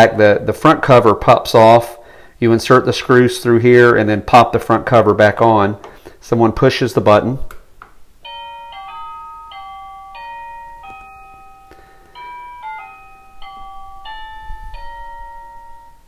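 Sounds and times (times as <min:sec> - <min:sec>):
electronic door chime melody: 0:08.2 - 0:16.0.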